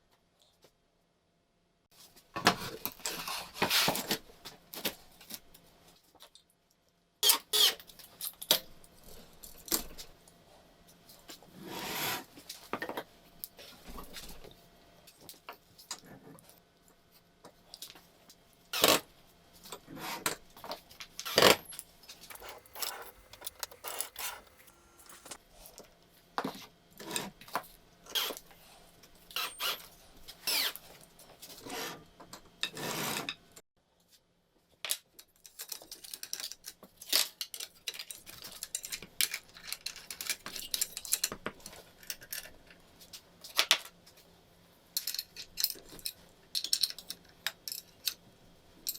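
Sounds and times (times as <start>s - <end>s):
metal parts and tools clinking: 21.2s - 25.4s.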